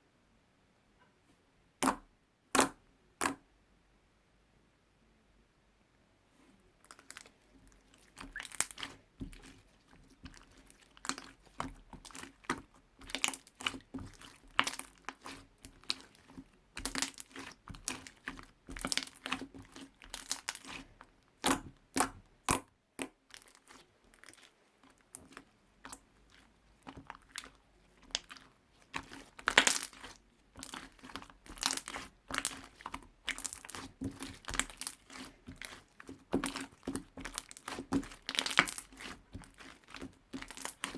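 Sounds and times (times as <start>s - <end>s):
slime sticky clicks and crackles: 29.0s - 40.9s.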